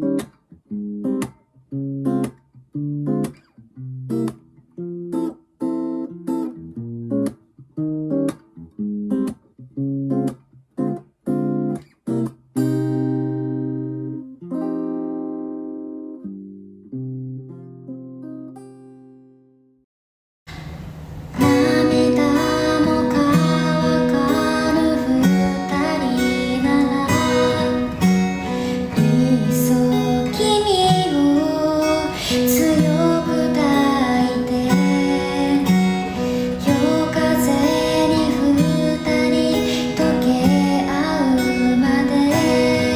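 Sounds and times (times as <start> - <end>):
acoustic guitar strumming chords: 20.6 - 42.9.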